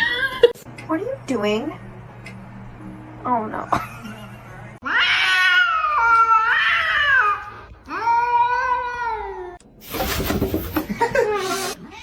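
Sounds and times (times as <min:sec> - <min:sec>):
cat yowling: 0:04.8 - 0:09.6.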